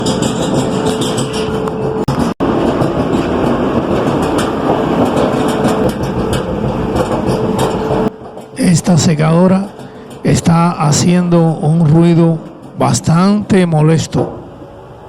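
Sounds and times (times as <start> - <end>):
clothes dryer running noisily: 0.0 - 15.0.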